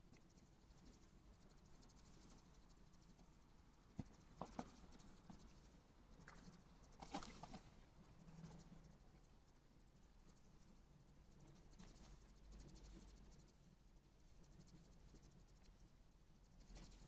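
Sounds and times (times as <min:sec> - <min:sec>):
foxes scuffling on ground: 0:06.2 - 0:07.8.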